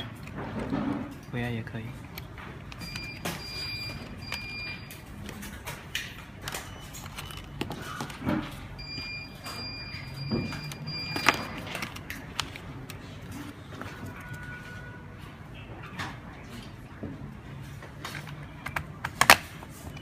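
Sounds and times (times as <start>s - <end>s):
high-pitched electronic beep: 8.8s - 11.5s.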